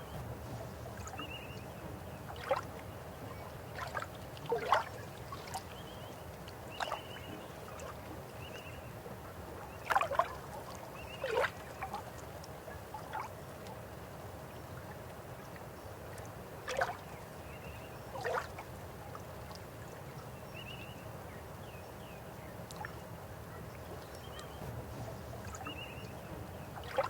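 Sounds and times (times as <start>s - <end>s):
river water flowing: 0.0s - 20.1s, 22.6s - 27.0s
water gurgles and plops: 0.1s - 8.7s, 24.0s - 27.0s.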